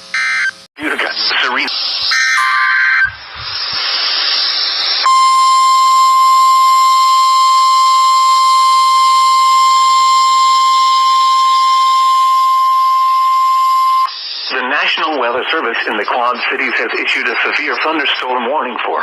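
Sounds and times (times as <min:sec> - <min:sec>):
radio static hiss: 0:00.8 - 0:12.6, 0:14.0 - 0:19.0
steady high alarm tone: 0:02.1 - 0:03.2, 0:05.0 - 0:14.2.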